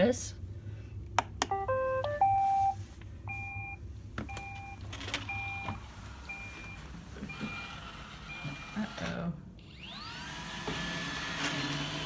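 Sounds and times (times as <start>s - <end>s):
electronic tone jingle: 1.5s - 2.8s.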